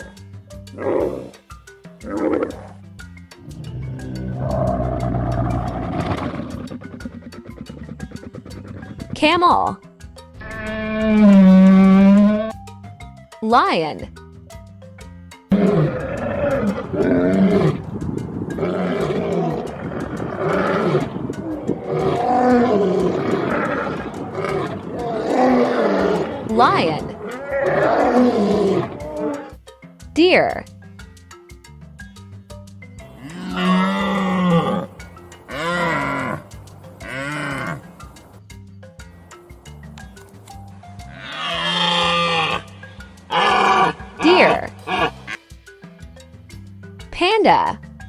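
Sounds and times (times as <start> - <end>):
deer calling: 0.0 - 14.2, 15.0 - 31.4, 33.0 - 38.4, 39.0 - 48.0
lion roaring: 0.8 - 1.4, 2.0 - 2.8, 3.4 - 9.2, 10.4 - 12.5, 15.5 - 29.6, 33.2 - 38.4, 41.0 - 45.4.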